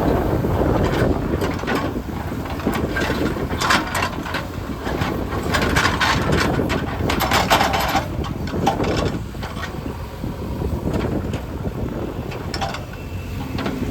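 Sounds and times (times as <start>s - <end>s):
diesel engine rumble: 0.0s - 13.9s
clattering and scraping: 0.8s - 9.8s.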